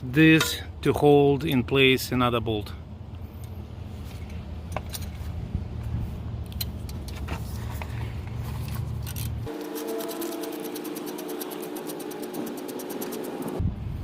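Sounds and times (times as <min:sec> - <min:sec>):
metal clinks of wrench and bolts: 0:09.0 - 0:09.4
steady whine with rapid ticking: 0:09.5 - 0:13.6
low rumble: 0:13.6 - 0:14.0.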